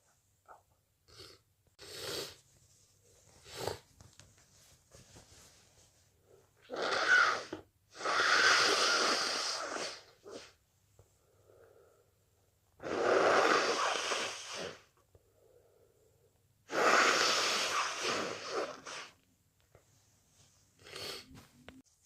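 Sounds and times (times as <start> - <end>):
person blowing nose: 1.1 - 2.4, 3.4 - 3.8, 6.6 - 10.6, 12.8 - 14.9, 16.7 - 19.2
faint breaths: 10.2 - 12.5, 14.8 - 16.5.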